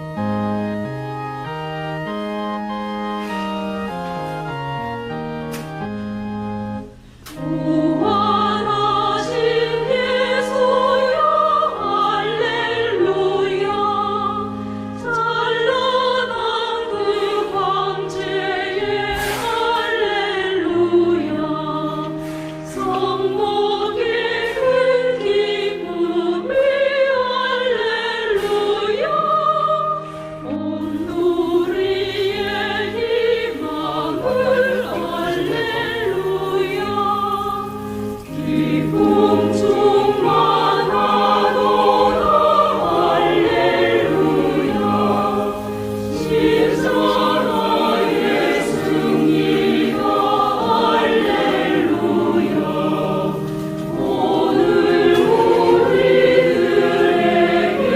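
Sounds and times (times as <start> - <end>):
choir singing slow sacred piece: 0.0 - 57.9
held accompaniment chords: 0.0 - 57.9.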